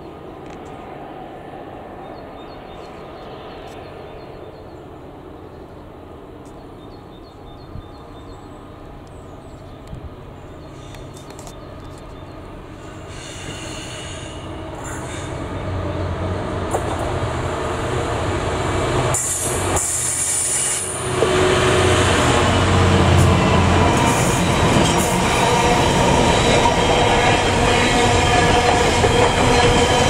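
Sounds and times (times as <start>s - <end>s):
freight train rumble: 0.0s - 30.0s
train wheels squealing on rails: 10.6s - 16.1s, 19.1s - 30.0s.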